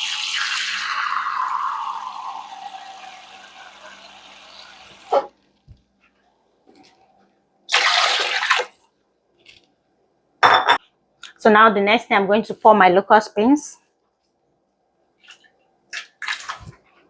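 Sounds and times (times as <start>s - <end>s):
water pouring into a pot: 0.0s - 5.1s, 7.7s - 8.8s.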